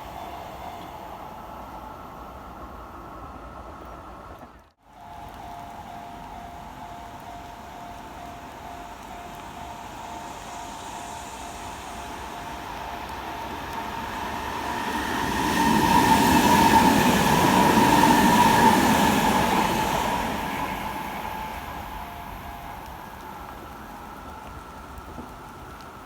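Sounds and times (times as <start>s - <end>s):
crossing warning bells ringing: 0.0s - 3.0s, 4.8s - 25.6s
train wheels rumbling on rails: 0.0s - 26.0s.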